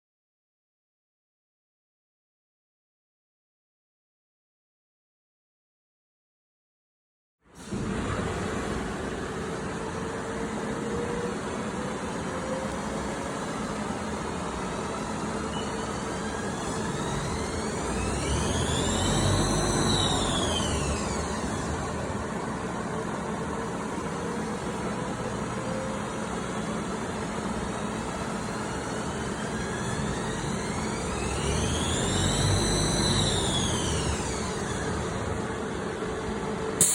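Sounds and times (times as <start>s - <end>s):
spindle whine rising and falling: 7.6s - 36.9s
lathe machine noise: 7.9s - 36.9s.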